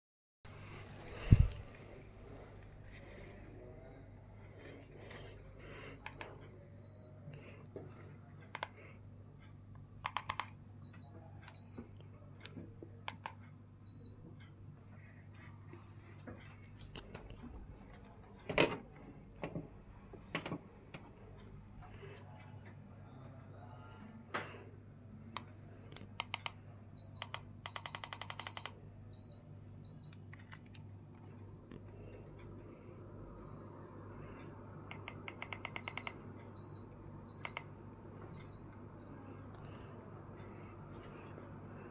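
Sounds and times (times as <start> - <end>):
air conditioner humming: 0.5 - 41.9
air conditioner high beeps: 6.8 - 7.3, 10.8 - 12.3, 13.8 - 14.5, 26.9 - 30.3, 34.4 - 39.0.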